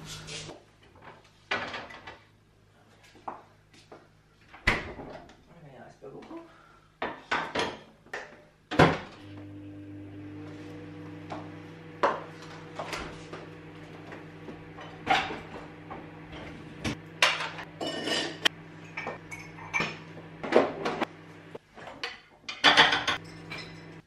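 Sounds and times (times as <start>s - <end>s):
low appliance hum: 0.0s - 7.1s, 7.7s - 24.0s
dishes scraping: 16.3s - 21.1s
dishes and cutlery clinking: 17.2s - 20.0s, 22.0s - 24.0s.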